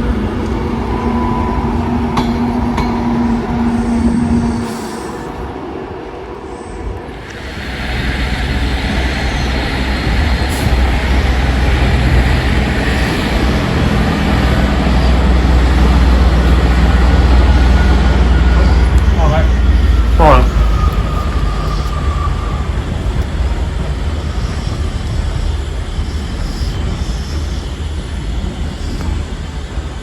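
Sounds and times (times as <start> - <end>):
train rumbling past: 0.0 - 30.0
low droning hum: 7.3 - 29.5.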